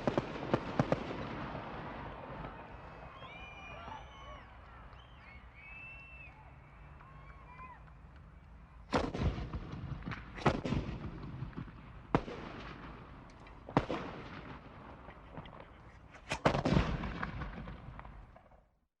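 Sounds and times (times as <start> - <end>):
rifle shots with echo: 0.0 - 3.2, 8.9 - 18.5.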